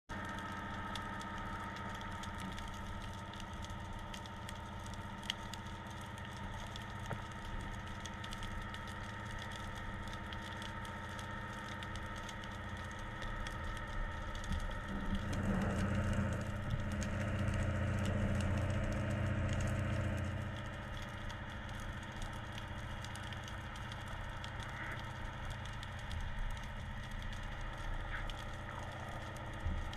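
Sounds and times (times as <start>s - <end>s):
fine crackling and ticking: 0.1s - 29.9s
underwater mechanical hum: 0.1s - 29.9s
low rumble: 12.5s - 29.9s.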